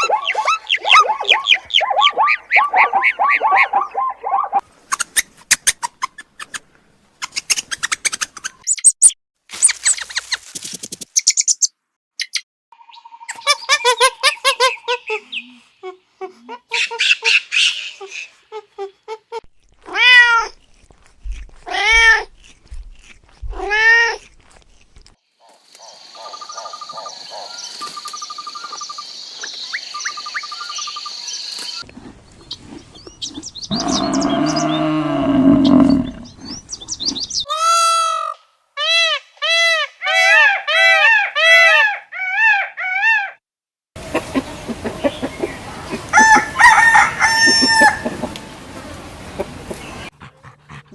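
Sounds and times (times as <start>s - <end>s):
steady high-pitched animal sound: 0.0s - 4.6s
low animal call: 33.7s - 36.6s.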